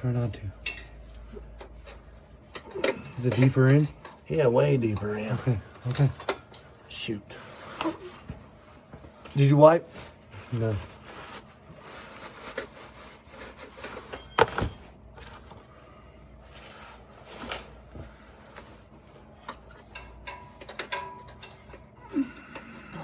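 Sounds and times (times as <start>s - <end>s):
hand tools clicking and scraping metal: 0.6s - 4.2s, 4.8s - 7.1s, 19.4s - 23.0s.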